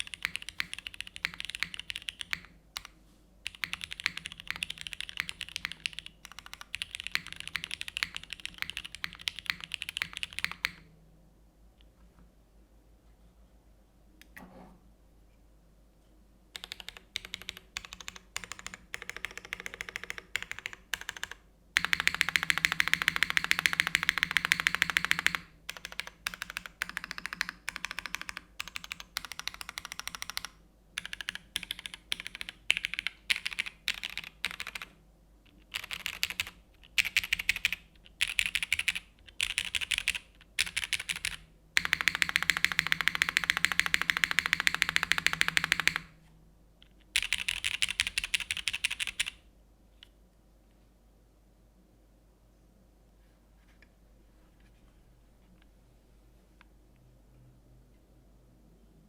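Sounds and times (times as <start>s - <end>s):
mechanical keyboard typing: 0.0s - 10.9s, 16.6s - 34.9s, 35.5s - 46.1s, 47.0s - 49.4s.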